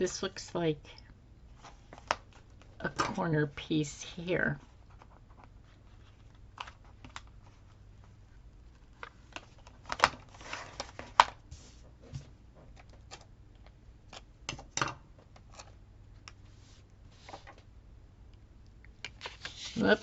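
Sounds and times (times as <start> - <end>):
paper and sticker sheets rustling: 19.2 - 20.0.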